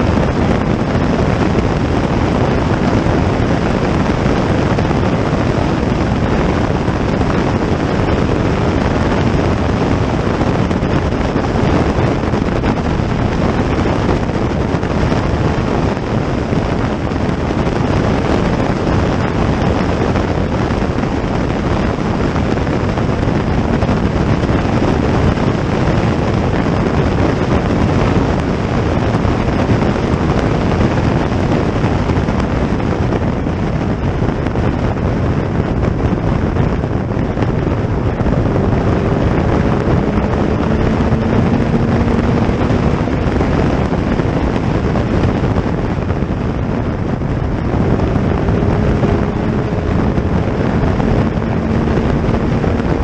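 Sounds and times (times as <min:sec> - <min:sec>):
wind noise on microphone: 0:00.0 - 0:53.0
racing car engines: 0:36.1 - 0:53.0.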